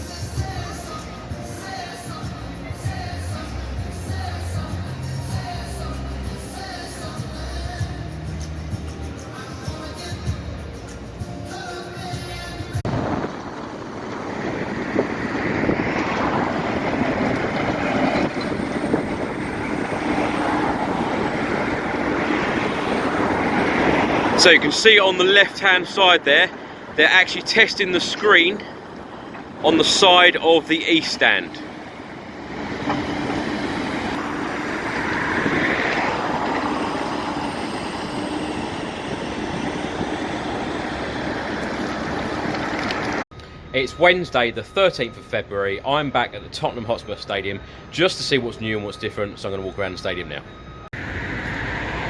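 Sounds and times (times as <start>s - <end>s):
traffic noise: 0.0s - 52.0s
vehicle engine noise: 0.0s - 52.0s
wind rumbling on microphone: 12.7s - 25.8s, 28.0s - 43.2s.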